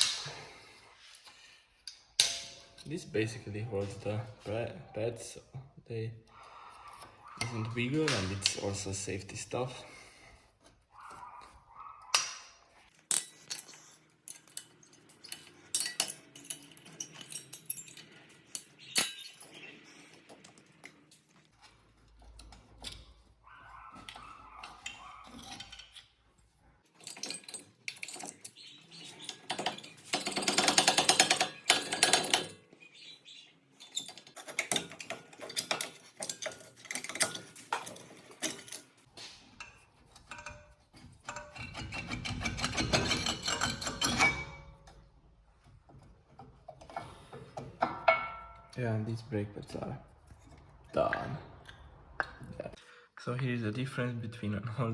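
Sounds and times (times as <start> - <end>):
metal clicks and clinks: 12.9 - 21.4, 26.9 - 32.6, 33.8 - 45.0.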